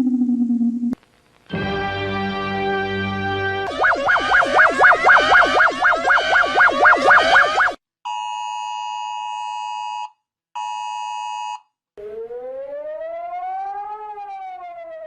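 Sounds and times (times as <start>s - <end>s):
siren-like rising tone: 3.6s - 7.8s, 12.0s - 15.0s
fast warbling alarm tone: 3.7s - 7.8s, 12.0s - 15.0s
two-tone attention signal: 3.7s - 7.8s.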